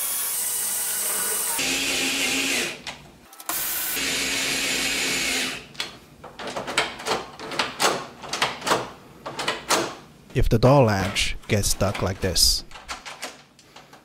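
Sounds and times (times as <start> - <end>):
door knob and latch clicking: 11.8 - 13.4.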